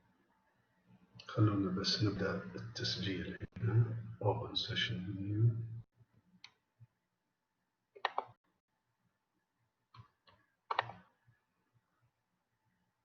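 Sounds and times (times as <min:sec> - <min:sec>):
computer clicks: 0:08.0 - 0:08.4, 0:10.0 - 0:11.0.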